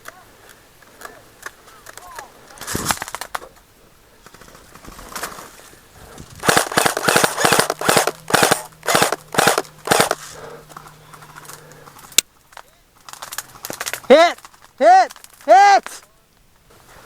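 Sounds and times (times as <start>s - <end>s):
airsoft guns firing bursts: 6.4s - 12.2s.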